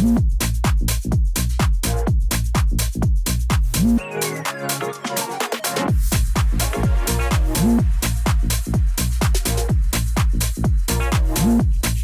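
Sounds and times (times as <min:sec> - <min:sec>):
electronic dance music: 0:03.5 - 0:12.0.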